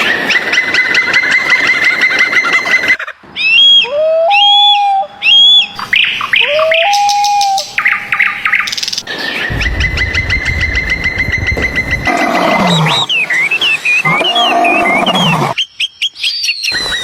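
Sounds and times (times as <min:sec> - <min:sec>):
birds calling: 0:00.0 - 0:17.0
low rumble: 0:09.5 - 0:13.3.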